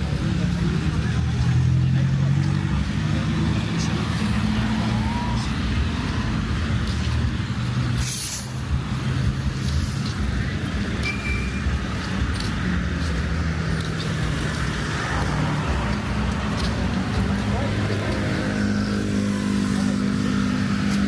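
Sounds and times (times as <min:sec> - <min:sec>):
vehicle engines and road noise: 0:00.0 - 0:21.0
high beep: 0:11.0 - 0:11.7.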